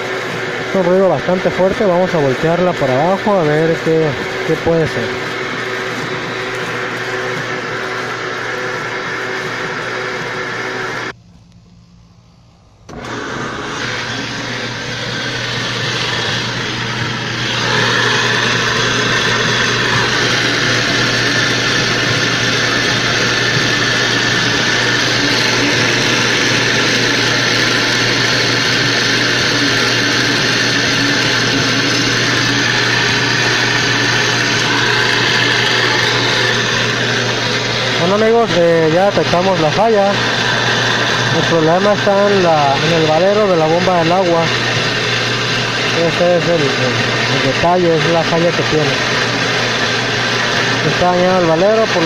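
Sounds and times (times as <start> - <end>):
washing machine mechanical noise: 0.0 - 11.8, 12.7 - 52.0
constant hum: 9.4 - 13.2.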